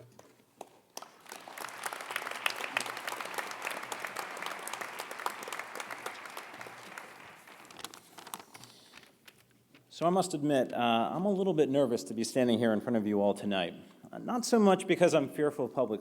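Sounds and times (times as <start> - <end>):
audience applauding: 0.6 - 8.0.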